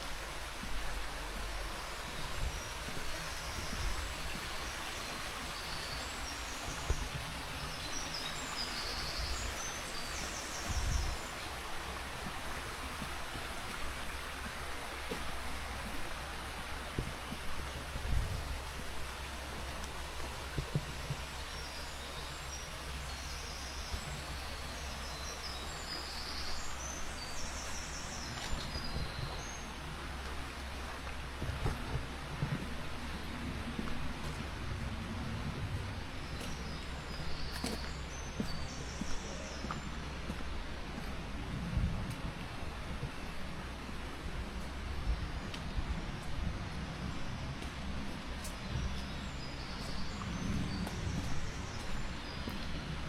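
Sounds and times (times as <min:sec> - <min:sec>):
flowing water rushing: 0:00.0 - 0:53.0.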